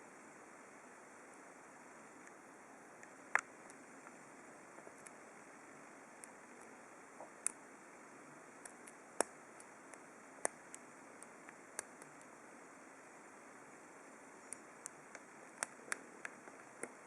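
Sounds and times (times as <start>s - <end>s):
quiet hiss: 0.0s - 17.0s.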